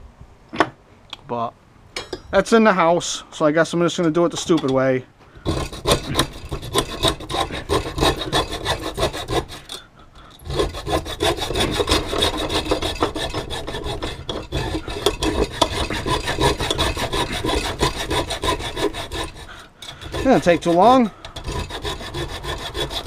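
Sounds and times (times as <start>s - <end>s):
hand saw cutting metal: 5.4s - 9.8s, 10.4s - 23.0s.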